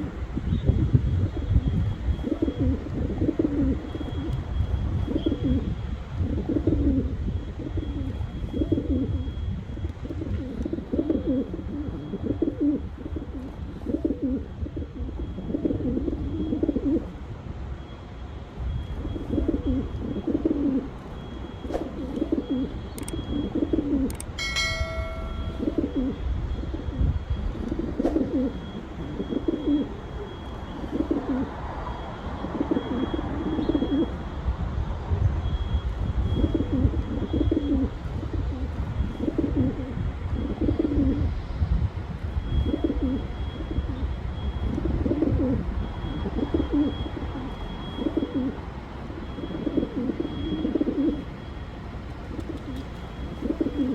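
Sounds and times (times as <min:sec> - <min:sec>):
pigeons cooing: 0:00.0 - 0:17.3, 0:18.8 - 0:34.4, 0:35.7 - 0:41.7, 0:42.3 - 0:53.9
brief high tone: 0:24.4 - 0:26.2.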